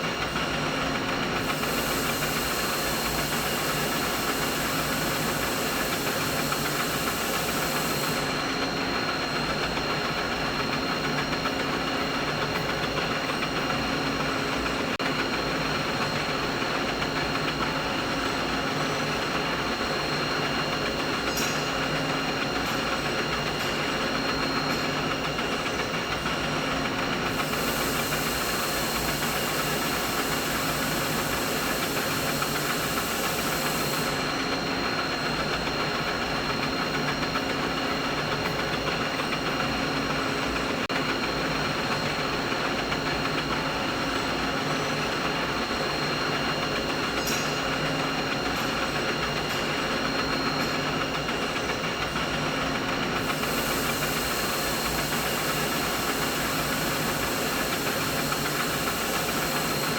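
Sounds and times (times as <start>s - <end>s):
machinery hum: 0.0s - 10.6s, 26.9s - 37.3s, 52.2s - 59.9s
high hiss: 1.4s - 8.3s, 27.3s - 34.3s, 53.2s - 59.9s.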